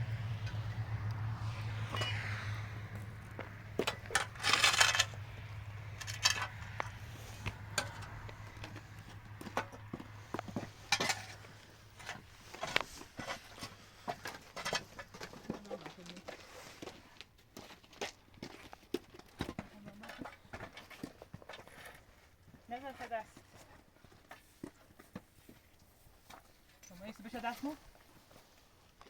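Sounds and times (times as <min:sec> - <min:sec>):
low steady hum: 0:00.0 - 0:12.7
objects knocking and clinking: 0:03.7 - 0:12.8.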